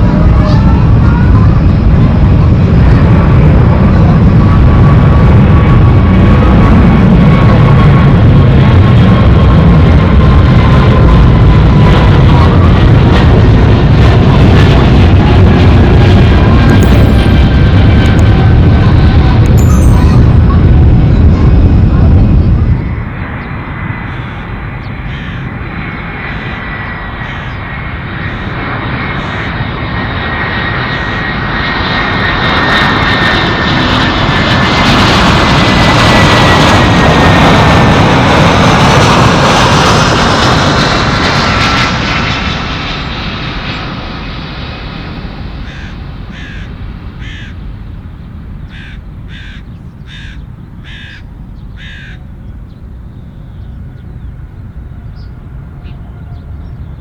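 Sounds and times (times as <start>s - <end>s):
jet airliner passing: 0.0s - 57.0s
high engine whine: 11.1s - 51.6s.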